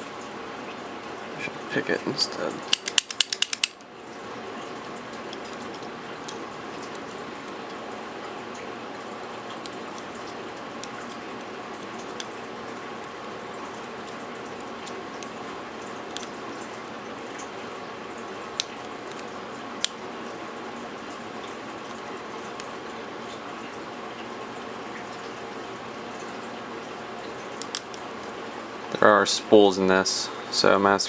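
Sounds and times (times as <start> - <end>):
lock pick metallic clicks: 2.7 - 3.8.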